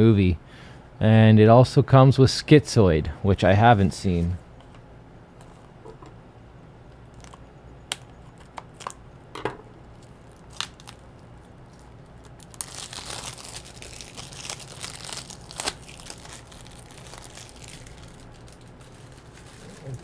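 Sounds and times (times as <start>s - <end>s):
plastic wrapping crinkling and tearing: 9.9s - 20.0s.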